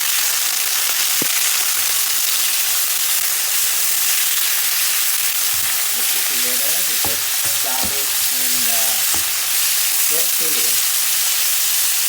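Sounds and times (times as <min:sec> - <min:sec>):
chicken sizzling in hot oil: 0:00.0 - 0:12.0
oil crackle: 0:00.4 - 0:12.0.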